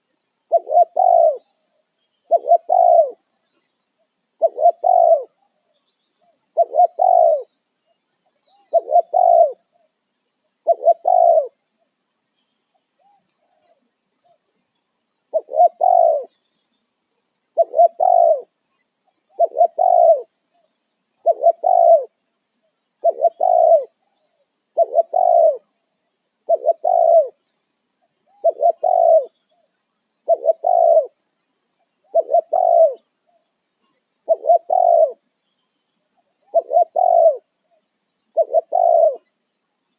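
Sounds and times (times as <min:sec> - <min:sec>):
dove cooing: 0:00.5 - 0:01.5, 0:02.2 - 0:03.2, 0:04.4 - 0:05.3, 0:06.5 - 0:07.5, 0:08.6 - 0:09.7, 0:10.6 - 0:11.6, 0:15.3 - 0:16.3, 0:17.6 - 0:18.5, 0:19.3 - 0:20.3, 0:21.2 - 0:22.2, 0:23.0 - 0:23.9, 0:24.8 - 0:25.7, 0:26.5 - 0:27.4, 0:28.3 - 0:29.4, 0:30.2 - 0:31.2, 0:32.1 - 0:33.1, 0:34.2 - 0:35.2, 0:36.4 - 0:37.5, 0:38.3 - 0:39.2.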